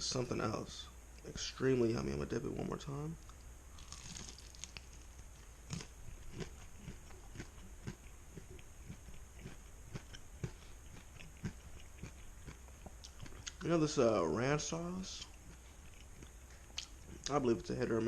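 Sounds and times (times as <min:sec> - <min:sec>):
person chewing: 0:03.2 - 0:13.7, 0:14.8 - 0:17.4.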